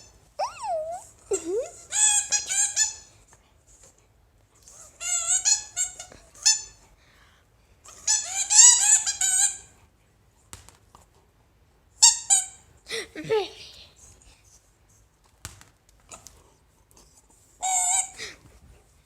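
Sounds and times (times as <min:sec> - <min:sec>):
puppy squeaking and whining: 0:00.4 - 0:03.1, 0:07.9 - 0:09.7, 0:17.6 - 0:18.2.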